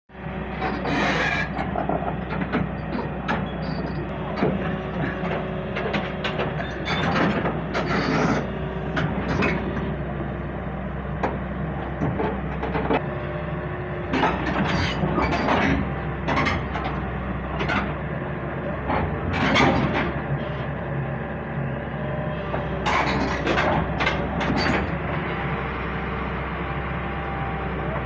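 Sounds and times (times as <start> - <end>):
digger diesel engine running: 0.1 - 28.0
metal clanks and knocks: 0.8 - 9.8, 14.1 - 17.9, 18.8 - 20.3.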